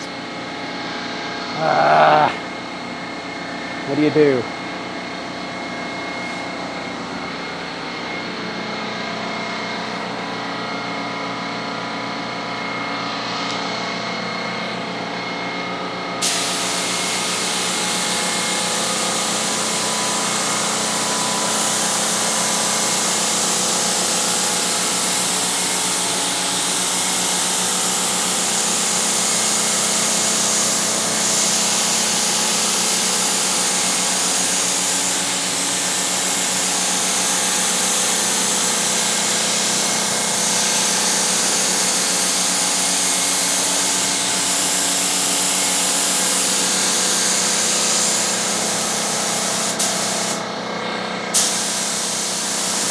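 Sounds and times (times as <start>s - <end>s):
spray gun hissing: 16.2s - 20.8s, 26.6s - 50.4s, 51.4s - 52.9s.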